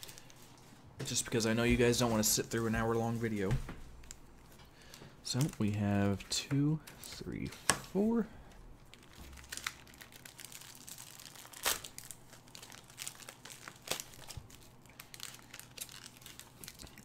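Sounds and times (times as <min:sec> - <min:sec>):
foil wrappers crinkling: 0:08.8 - 0:17.0.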